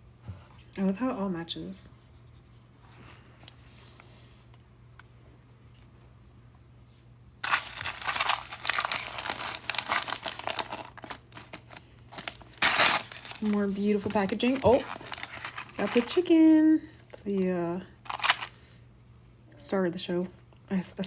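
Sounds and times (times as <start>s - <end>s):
plastic packaging crinkling: 7.4s - 16.6s, 18.0s - 18.6s.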